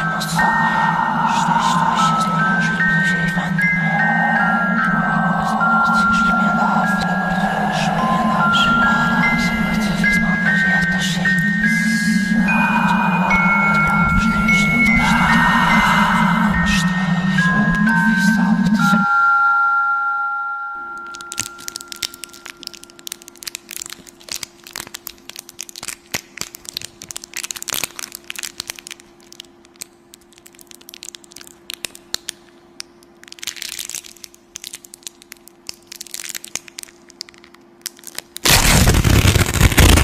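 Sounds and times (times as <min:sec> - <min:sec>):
loud rush of noise: 0:00.0 - 0:18.3, 0:38.5 - 0:40.0
low hum: 0:00.0 - 0:25.9, 0:38.4 - 0:40.0
crunching crackling noise: 0:21.0 - 0:40.0.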